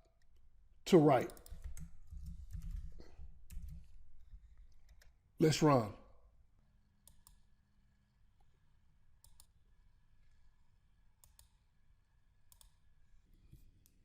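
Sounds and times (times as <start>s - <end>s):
computer mouse clicks: 1.2s - 3.9s, 4.5s - 5.2s, 7.0s - 7.5s, 9.2s - 9.6s, 11.2s - 11.6s, 12.5s - 12.8s.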